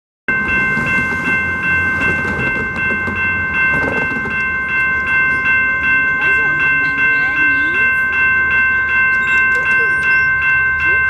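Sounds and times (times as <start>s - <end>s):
crossing bell ringing: 0.3s - 11.0s
train rumbling: 0.3s - 11.0s.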